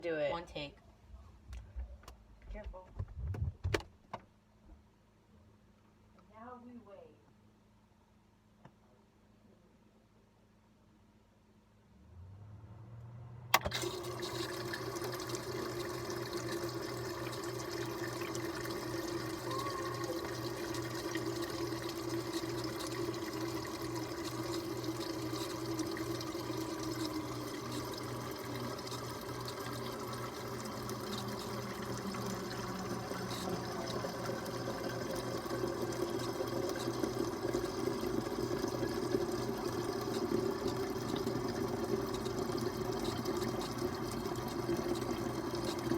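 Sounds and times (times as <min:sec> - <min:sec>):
refrigerator low hum: 0:13.5 - 0:45.9
water flowing into container: 0:13.5 - 0:45.9.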